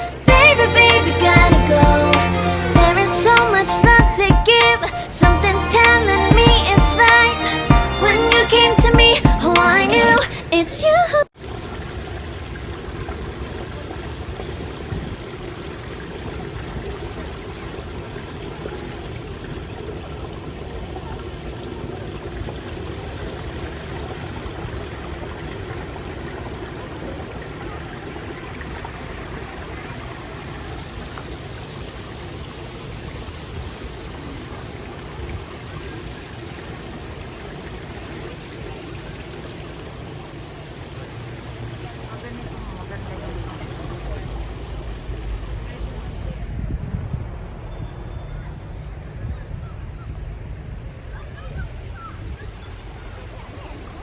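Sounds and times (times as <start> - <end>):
steady outdoor rushing noise: 29.3 - 54.0
low rumble: 44.0 - 51.1.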